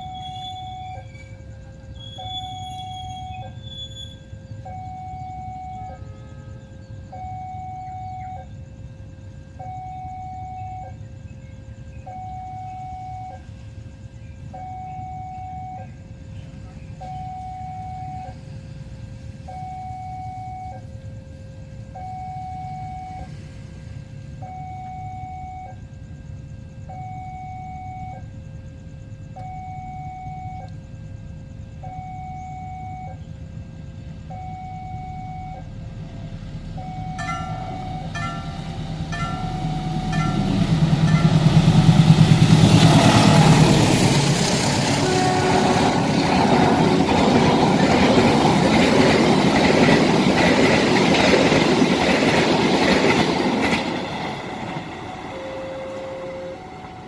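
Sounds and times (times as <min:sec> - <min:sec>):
level-crossing two-note electronic alarm: 0:00.0 - 0:13.6, 0:19.4 - 0:23.4, 0:24.4 - 0:25.9, 0:26.8 - 0:28.4, 0:34.2 - 0:57.0
low rumble of approaching train: 0:00.0 - 0:57.0.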